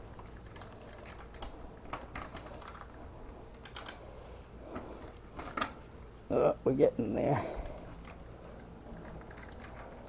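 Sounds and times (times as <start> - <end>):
bicycle chain clicking and clinking: 8.9 - 10.0.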